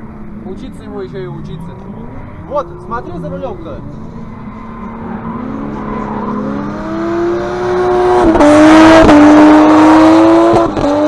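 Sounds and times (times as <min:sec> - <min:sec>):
car engine revving hard: 0:02.6 - 0:11.0.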